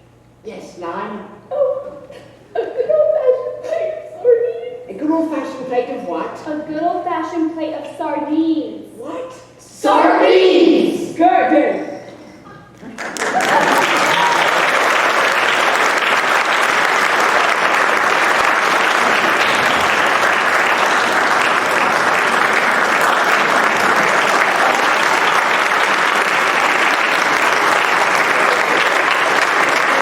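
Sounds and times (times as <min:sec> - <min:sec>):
audience applauding: 0:12.8 - 0:30.0.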